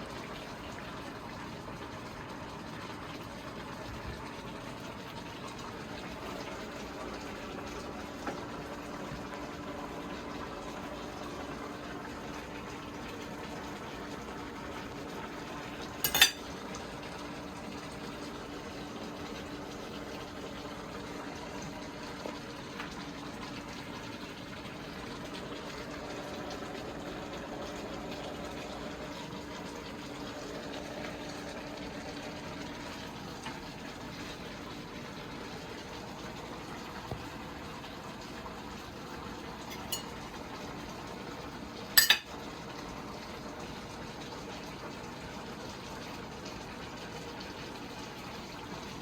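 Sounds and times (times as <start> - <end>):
pots simmering and bubbling: 0.0 - 49.0
utensil clinking: 16.0 - 16.5, 39.7 - 40.2, 42.0 - 42.3.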